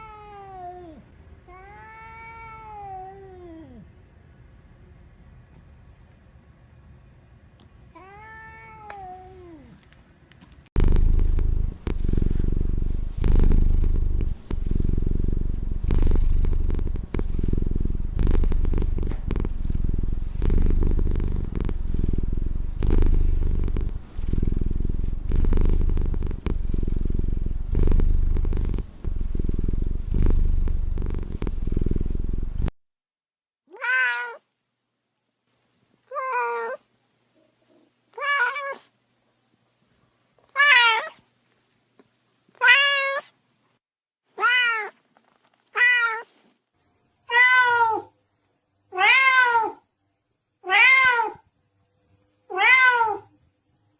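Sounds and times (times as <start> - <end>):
cat meowing: 0.0 - 3.8, 8.0 - 9.7, 33.7 - 34.5, 36.1 - 36.8, 38.1 - 38.9, 40.5 - 41.2, 42.6 - 43.3, 44.4 - 45.0, 45.8 - 46.3, 47.3 - 48.1, 48.9 - 49.8, 50.6 - 51.4, 52.5 - 53.3
cat purring: 10.8 - 32.8.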